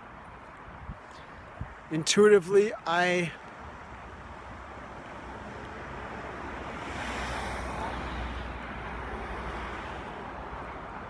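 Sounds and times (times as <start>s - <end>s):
wind: 0.0s - 11.0s
passing road traffic: 0.8s - 11.0s.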